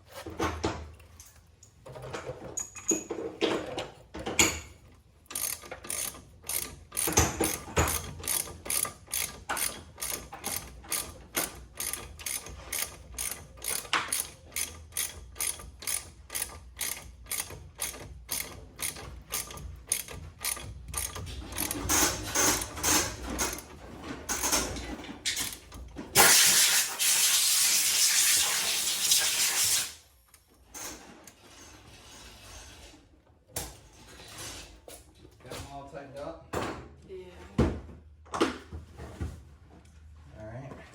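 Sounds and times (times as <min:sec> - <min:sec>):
hand ratchet clicking: 0:05.2 - 0:23.6.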